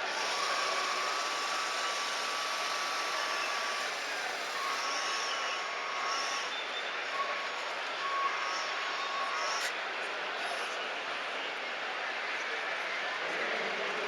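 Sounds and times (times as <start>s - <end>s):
small electric motors whining: 0.0s - 9.7s.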